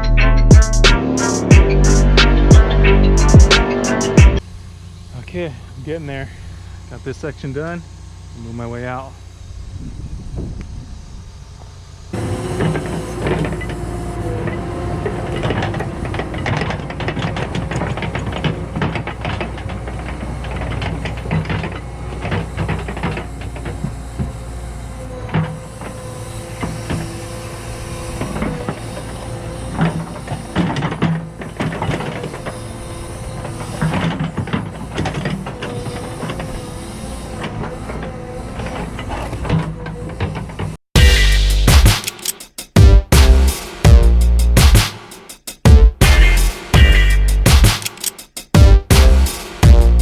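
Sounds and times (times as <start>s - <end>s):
excavator engine drone and whine: 0.0s - 41.7s
steel tracks clanking: 11.6s - 50.0s.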